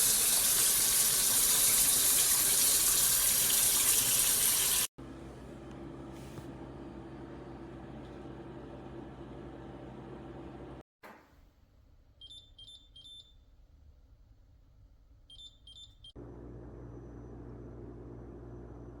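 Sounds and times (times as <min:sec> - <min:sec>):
low appliance hum: 0:05.0 - 0:10.8, 0:16.2 - 0:19.0.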